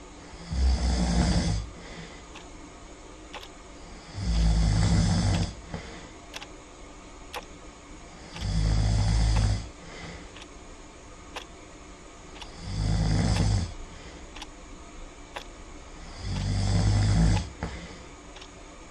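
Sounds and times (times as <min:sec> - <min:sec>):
loud snoring: 0:00.4 - 0:01.7, 0:04.0 - 0:05.6, 0:08.3 - 0:09.7, 0:12.5 - 0:13.8, 0:16.0 - 0:17.8.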